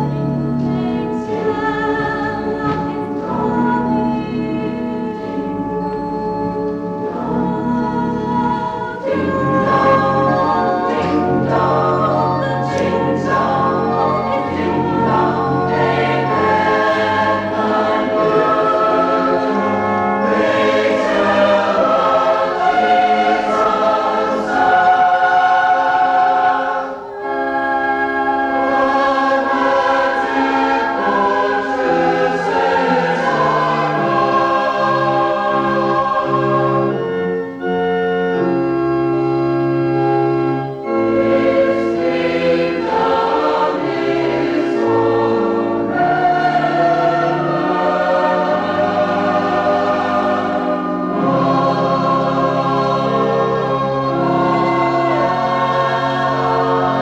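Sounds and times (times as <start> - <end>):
choir singing chords: 0.0 - 57.0.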